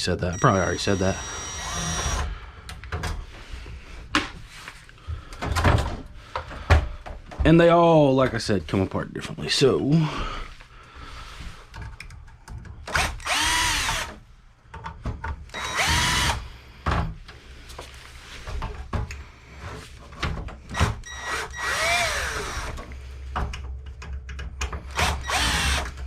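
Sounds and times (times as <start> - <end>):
cordless drill whining: 0.3 - 2.3, 12.9 - 14.2, 15.5 - 16.5, 20.7 - 22.8, 24.9 - 26.0
metal parts clicking and knocking: 23.4 - 24.9.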